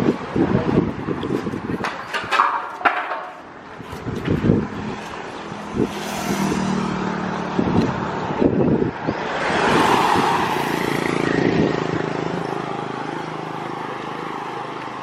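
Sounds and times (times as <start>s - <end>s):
motor vehicle passing: 3.1s - 15.0s.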